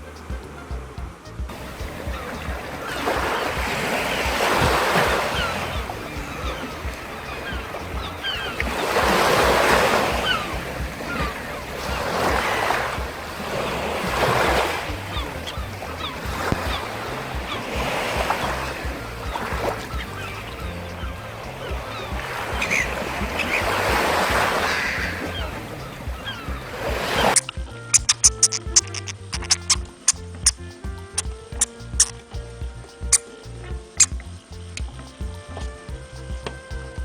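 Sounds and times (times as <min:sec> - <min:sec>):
background music: 0:00.0 - 0:37.0
waves washing in: 0:01.5 - 0:30.1.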